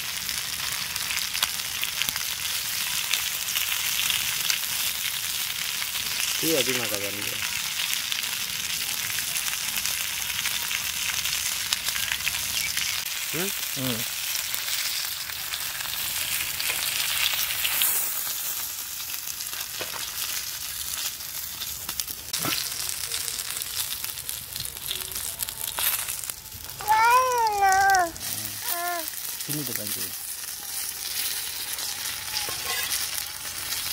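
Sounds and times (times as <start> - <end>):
food sizzling in hot oil: 0.0 - 33.9
person calling out loudly: 26.8 - 29.1.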